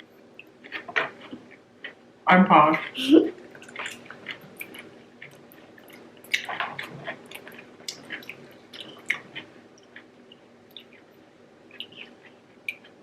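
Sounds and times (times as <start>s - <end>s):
wet chewing and lip-smacking: 2.8s - 13.0s.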